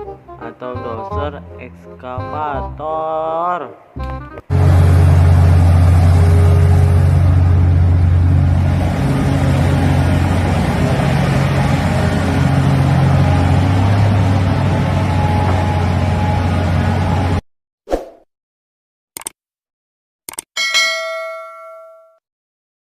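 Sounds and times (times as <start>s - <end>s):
low engine drone: 4.5s - 17.4s.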